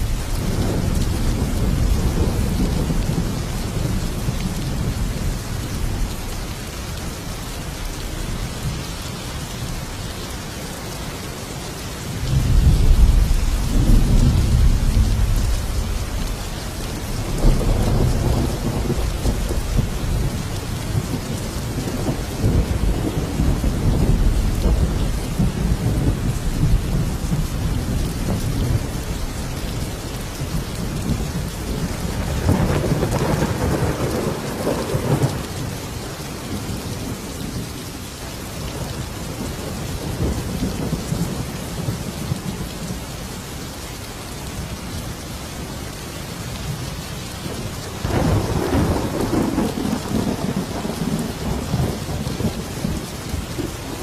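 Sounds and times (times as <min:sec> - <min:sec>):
rolling thunder: 0:00.0 - 0:06.4, 0:12.2 - 0:37.8, 0:47.4 - 0:54.0
steady rain falling: 0:00.0 - 0:54.0.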